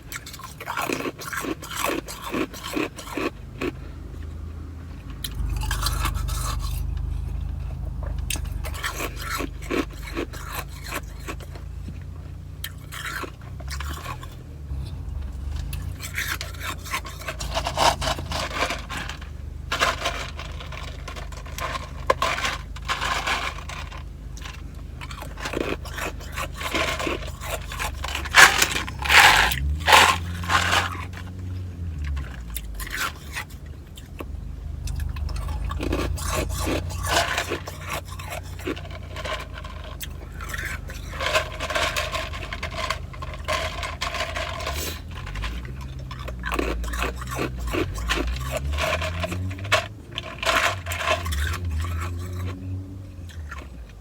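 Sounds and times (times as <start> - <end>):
ice crunching in mouth: 0.0 - 4.4, 5.0 - 54.0
steady low hum: 3.4 - 22.9.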